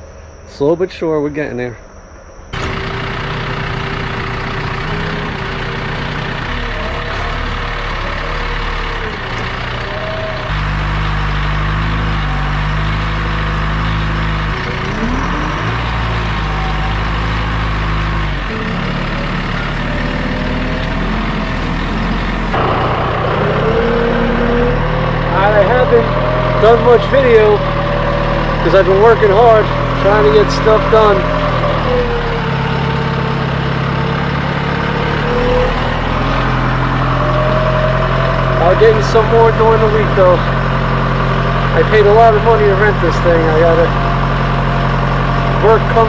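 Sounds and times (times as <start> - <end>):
thin pitch-shifting whine: 0.0 - 3.2
backhoe diesel engine: 0.0 - 46.0.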